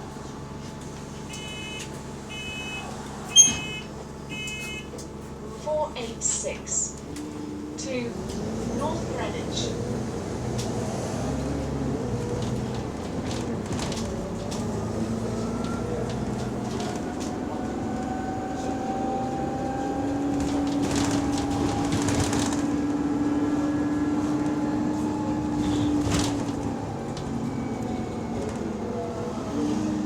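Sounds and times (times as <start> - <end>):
bus engine rumble: 0.0 - 30.0
rattles and clicks: 12.3 - 14.8, 20.0 - 23.0.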